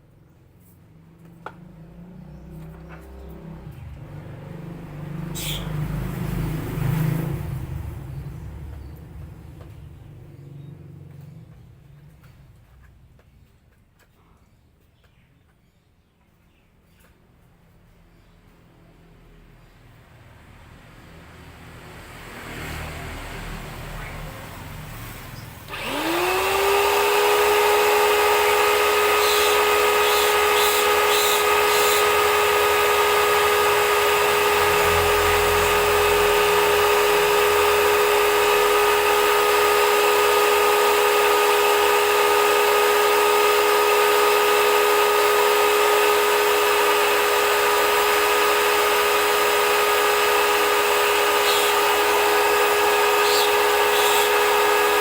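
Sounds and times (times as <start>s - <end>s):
pressure washer motor whine: 2.6s - 7.8s, 25.6s - 55.0s.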